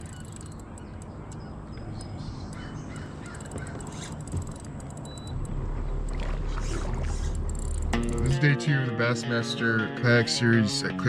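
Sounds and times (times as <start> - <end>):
light clicks: 0.0 - 6.3
birds calling: 0.0 - 8.4
low steady hum: 0.0 - 8.7.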